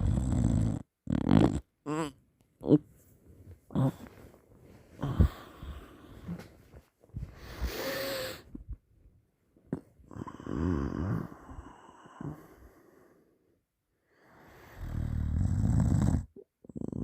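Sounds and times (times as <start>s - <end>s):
person snoring: 0.0s - 2.8s, 3.7s - 4.2s, 5.0s - 6.4s, 7.4s - 8.5s, 10.1s - 13.3s, 14.2s - 17.0s.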